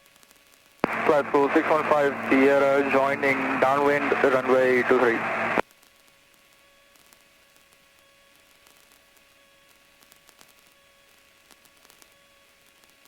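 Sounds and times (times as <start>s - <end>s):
faint static hiss: 0.0s - 13.0s
thin steady hum: 0.8s - 5.6s.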